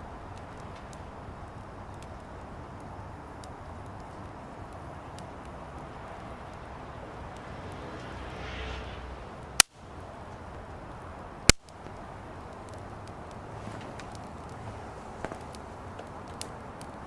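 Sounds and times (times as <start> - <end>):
fire crackling: 0.0 - 17.0
loud sharp fire pops: 9.4 - 17.0.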